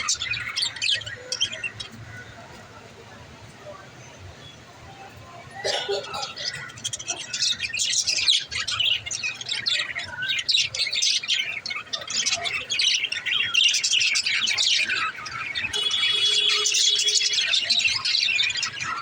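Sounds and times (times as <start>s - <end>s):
budgerigars chirping: 6.2s - 19.0s.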